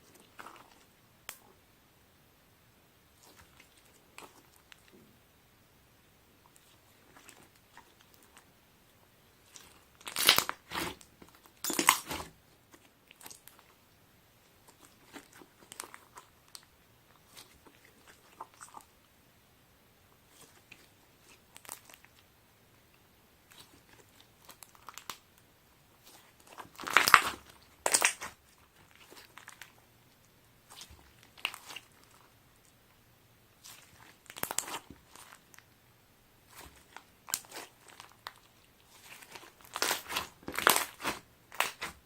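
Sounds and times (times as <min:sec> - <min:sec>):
slime squishing crackly: 0:00.0 - 0:01.5, 0:03.2 - 0:05.0, 0:06.5 - 0:08.5, 0:09.4 - 0:13.8, 0:14.5 - 0:18.9, 0:20.2 - 0:22.2, 0:23.4 - 0:32.8, 0:33.6 - 0:35.7, 0:36.4 - 0:42.0.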